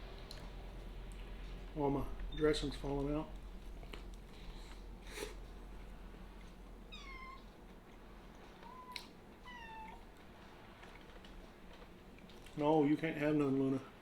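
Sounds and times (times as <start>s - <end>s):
cat meowing: 6.9s - 7.5s, 8.6s - 10.0s.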